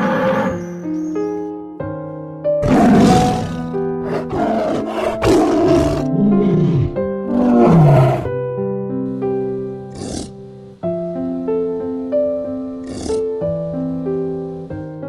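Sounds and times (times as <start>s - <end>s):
big cat roaring: 0.0s - 0.6s, 2.6s - 8.3s, 9.9s - 10.4s, 12.8s - 13.3s
piano music: 0.0s - 15.0s.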